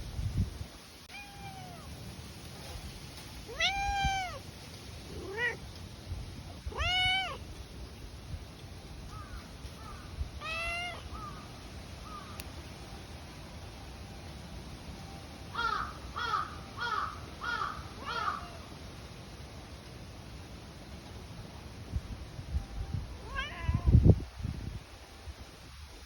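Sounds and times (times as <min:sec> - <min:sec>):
cat meowing: 0:01.1 - 0:01.9, 0:03.5 - 0:04.4, 0:05.1 - 0:05.6, 0:06.6 - 0:07.4, 0:10.4 - 0:11.4, 0:23.2 - 0:24.0
cat chirping calls: 0:01.1 - 0:02.0, 0:03.5 - 0:04.4, 0:05.0 - 0:05.8, 0:06.5 - 0:07.6, 0:09.8 - 0:12.4, 0:23.2 - 0:24.0.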